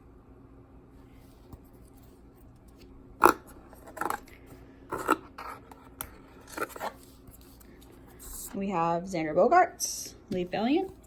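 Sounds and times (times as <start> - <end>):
cards sliding and scraping: 1.0 - 8.5.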